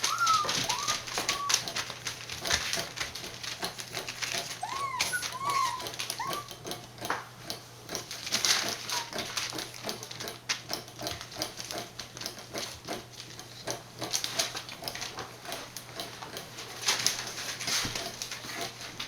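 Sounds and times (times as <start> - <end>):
puppy whimper: 0.0 - 1.9, 4.5 - 6.8, 8.7 - 9.3
puppy paws pattering and scrabbling: 0.0 - 19.0.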